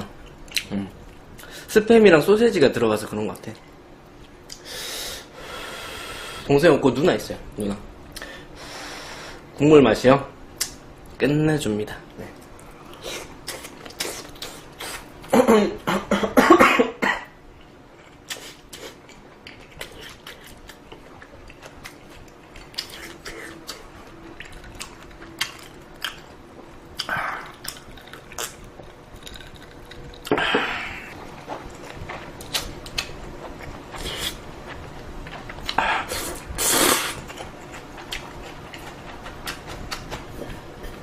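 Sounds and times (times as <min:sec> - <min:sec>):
woman coughing: 0:15.3 - 0:17.3.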